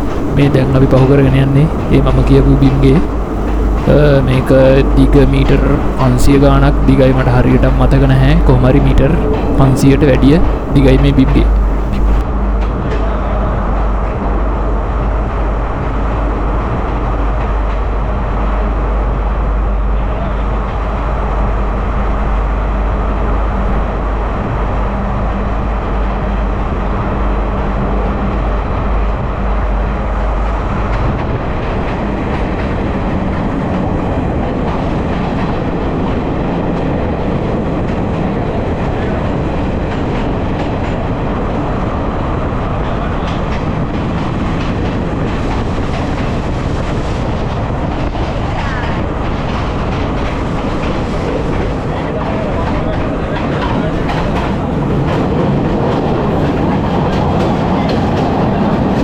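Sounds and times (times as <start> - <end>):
train rumbling in tunnel: 0.0 - 59.0
wheels clattering over rail joints: 26.9 - 59.0.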